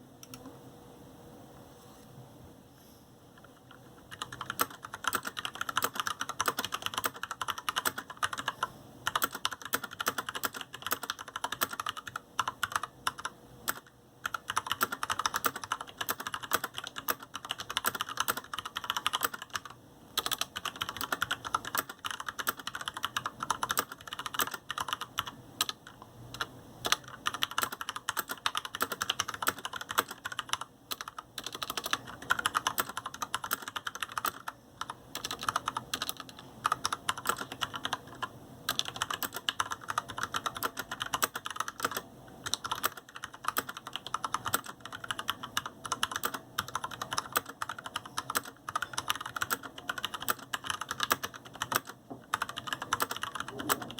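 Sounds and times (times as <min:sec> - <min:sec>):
mechanical keyboard typing: 0:03.5 - 0:53.9.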